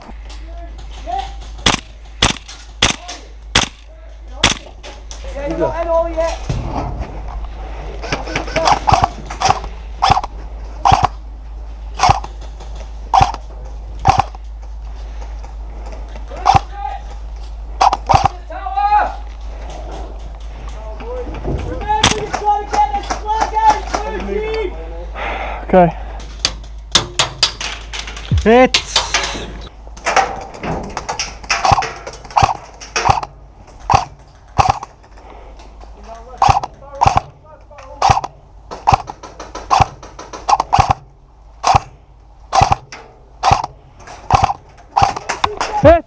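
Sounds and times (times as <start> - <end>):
airsoft rifle shots: 1.6 - 4.8, 8.1 - 11.2, 12.0 - 12.4, 13.1 - 13.4, 14.0 - 14.4, 16.4 - 16.7, 17.8 - 18.4, 22.0 - 22.4, 31.4 - 33.3, 33.9 - 34.9, 36.4 - 37.4, 38.0 - 45.6.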